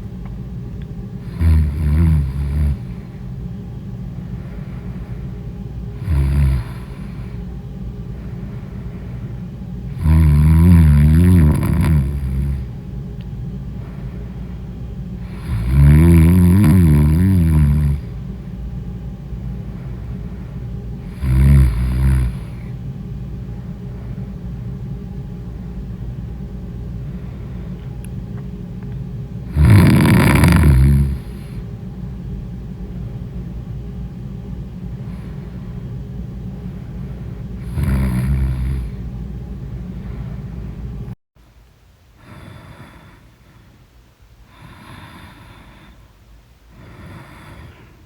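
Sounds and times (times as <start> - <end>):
steady low rumble: 0.0 - 42.2
person snoring loudly: 1.2 - 3.1, 6.0 - 7.4, 9.9 - 12.7, 15.2 - 18.2, 21.0 - 22.7, 29.5 - 31.6, 37.6 - 39.0, 44.5 - 46.0, 46.8 - 47.9.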